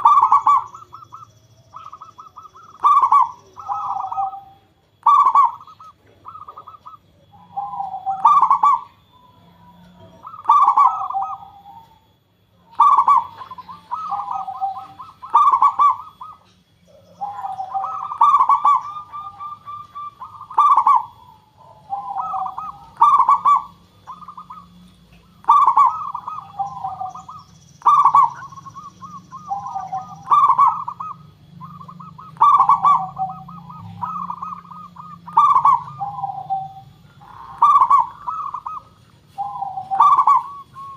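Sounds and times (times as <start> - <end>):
dove cooing: 0.0 - 40.9.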